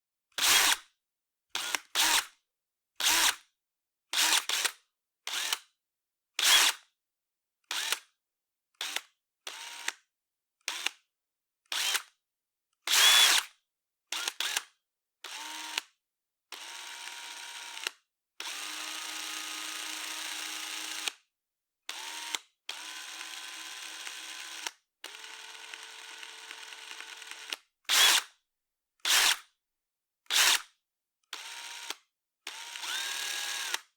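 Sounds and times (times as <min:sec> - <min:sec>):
electric drill whirring: 0:00.4 - 0:00.8, 0:01.6 - 0:02.3, 0:03.0 - 0:03.4, 0:04.2 - 0:04.7, 0:06.4 - 0:06.8, 0:07.7 - 0:08.0, 0:11.7 - 0:12.0, 0:12.9 - 0:13.5, 0:15.3 - 0:15.8, 0:16.6 - 0:21.1, 0:22.0 - 0:28.3, 0:29.1 - 0:29.4, 0:30.3 - 0:30.7, 0:31.4 - 0:33.9.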